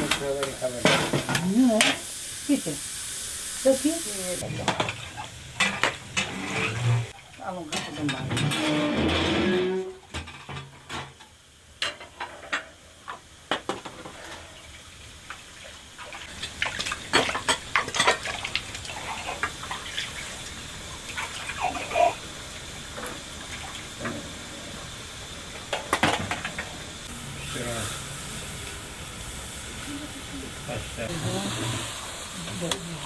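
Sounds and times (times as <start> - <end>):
water splashing and running: 14.9 - 24.8.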